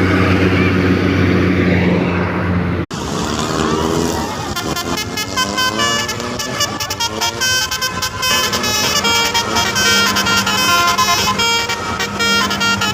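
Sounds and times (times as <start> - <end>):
vehicle engine humming: 0.0 - 12.9
musical horn melody: 4.4 - 12.9.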